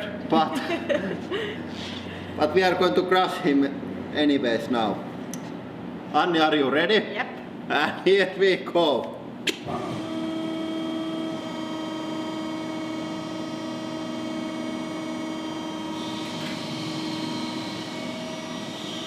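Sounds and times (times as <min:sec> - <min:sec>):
hydraulic pump humming: 0:09.5 - 0:19.0.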